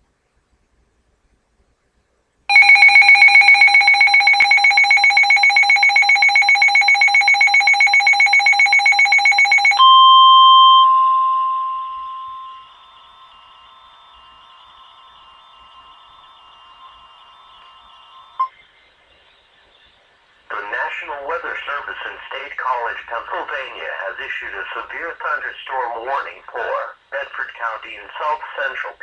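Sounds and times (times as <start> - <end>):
faint receiver hiss: 0.0 - 2.5, 9.9 - 29.0
steady alert tone: 2.5 - 18.4.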